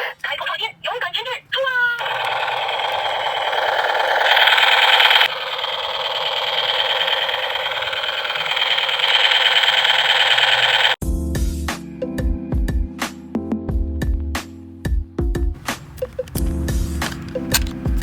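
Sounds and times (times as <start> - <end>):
toy gun rattling buzz: 2.0 - 11.0, 17.0 - 17.8.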